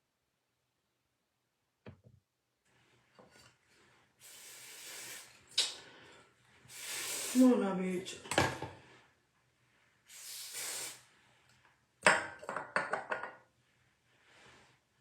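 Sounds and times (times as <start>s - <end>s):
short spray hiss: 4.2s - 5.8s, 6.7s - 7.5s, 10.1s - 11.1s.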